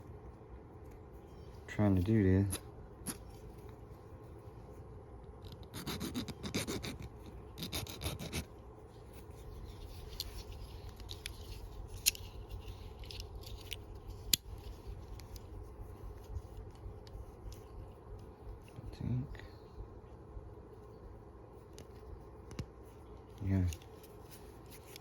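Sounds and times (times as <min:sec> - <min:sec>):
light handling ticks: 0:05.3 - 0:20.0, 0:20.7 - 0:25.0
raspy scraping of small parts: 0:05.4 - 0:17.8.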